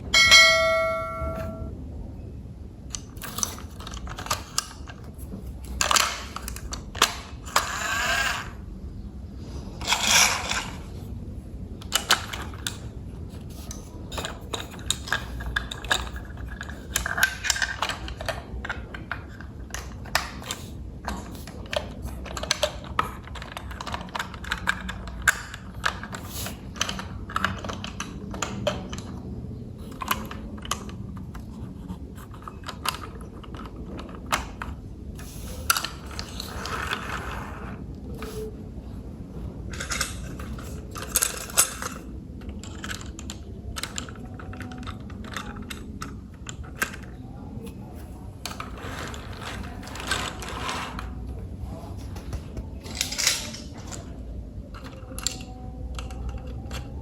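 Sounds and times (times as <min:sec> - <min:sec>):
plastic toy parts clicking: 0:02.9 - 0:08.5, 0:11.8 - 0:29.3, 0:39.7 - 0:47.7, 0:52.9 - 0:57.0.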